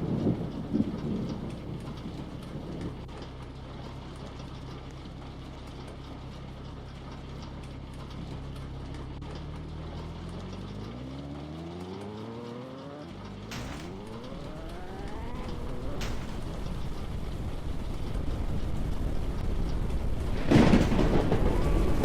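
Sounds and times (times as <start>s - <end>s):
car engine accelerating: 8.0s - 22.0s.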